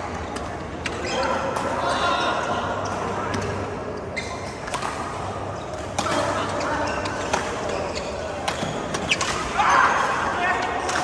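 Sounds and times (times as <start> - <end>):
rackets striking shuttlecock: 4.4 - 10.2.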